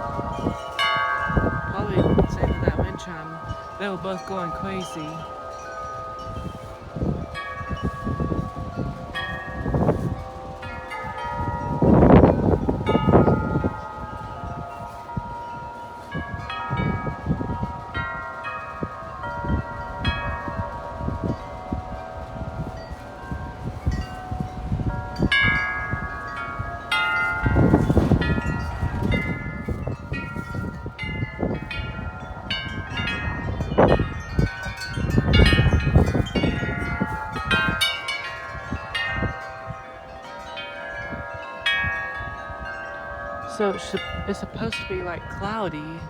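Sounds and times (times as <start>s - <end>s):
large tubular wind chimes ringing: 0.0s - 46.0s
wind buffeting microphone: 0.0s - 46.0s.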